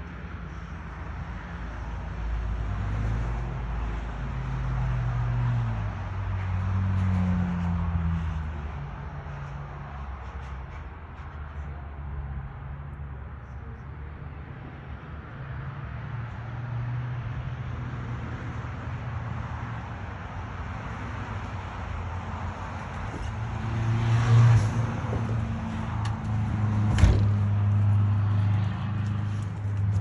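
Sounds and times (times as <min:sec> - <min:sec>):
engine humming: 0:22.1 - 0:30.0.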